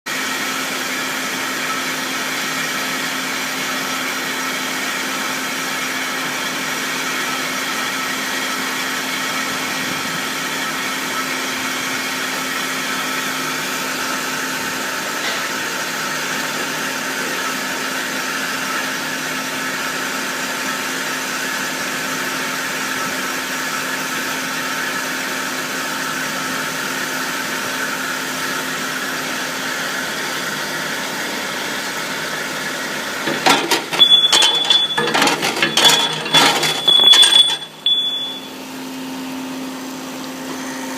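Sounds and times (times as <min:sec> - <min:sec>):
band saw running: 0:26.0 - 0:38.5.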